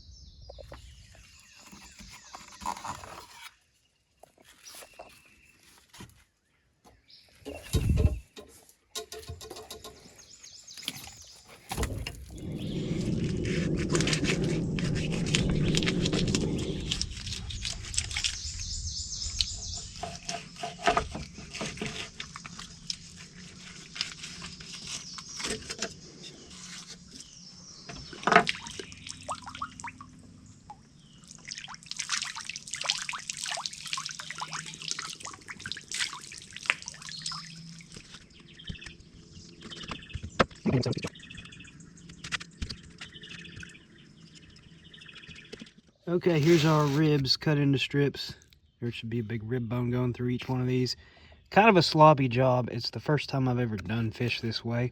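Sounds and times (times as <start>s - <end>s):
water splashing: 28.3s - 38.3s.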